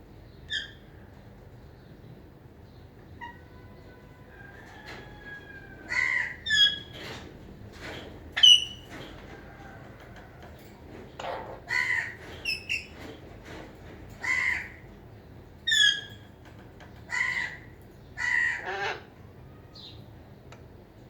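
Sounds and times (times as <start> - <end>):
parrots calling: 5.9 - 6.9, 11.2 - 12.9, 17.1 - 19.1.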